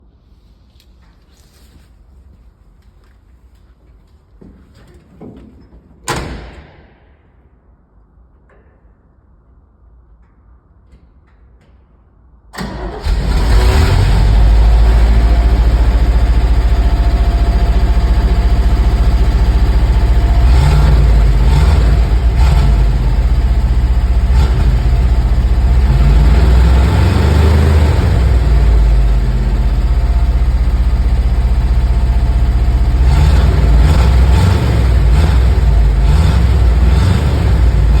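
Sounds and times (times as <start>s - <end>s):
truck engine idling: 12.7s - 38.0s.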